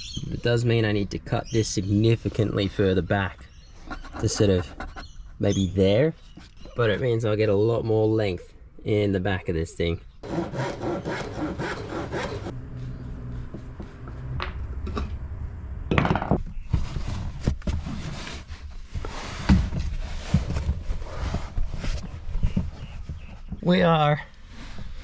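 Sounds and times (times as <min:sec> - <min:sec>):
saw cutting wood: 0:10.2 - 0:12.6.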